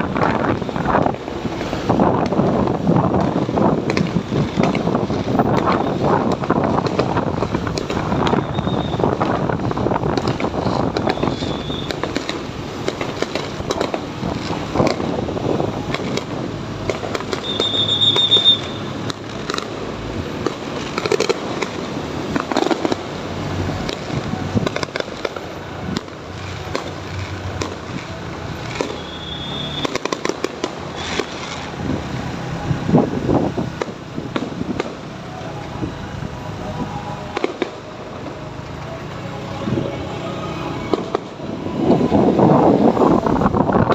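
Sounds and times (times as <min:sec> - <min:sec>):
wind on microphone: 0:00.0 - 0:17.0, 0:23.6 - 0:26.7, 0:31.6 - 0:37.0, 0:40.9 - 0:43.9
fireworks bangs and crackling: 0:00.0 - 0:43.9.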